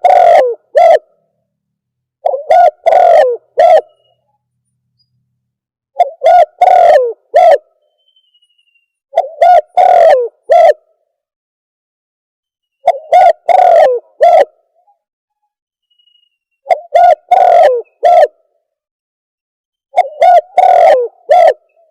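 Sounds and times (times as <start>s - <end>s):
dove cooing: 0.0s - 1.2s, 2.2s - 4.1s, 6.0s - 7.7s, 9.2s - 10.8s, 12.8s - 14.8s, 16.7s - 18.5s, 20.0s - 21.9s.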